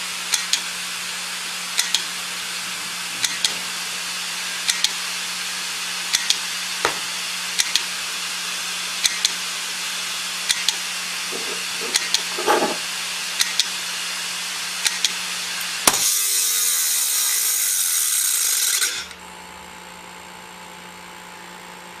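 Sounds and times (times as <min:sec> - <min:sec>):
hard drive clicking: 0:01.8 - 0:02.1.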